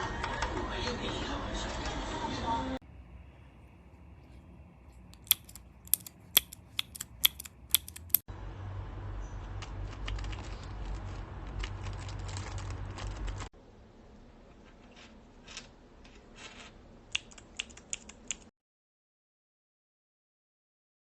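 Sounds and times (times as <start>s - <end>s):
low hum: 2.8s - 14.2s
keyboard switches clicking: 5.1s - 8.2s.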